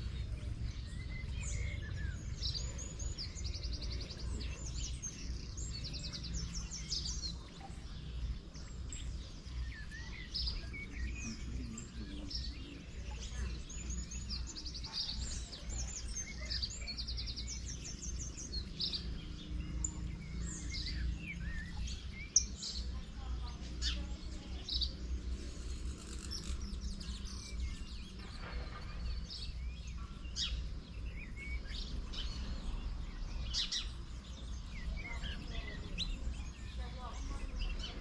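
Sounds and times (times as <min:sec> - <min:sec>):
small birds chirping: 0:00.0 - 0:38.0.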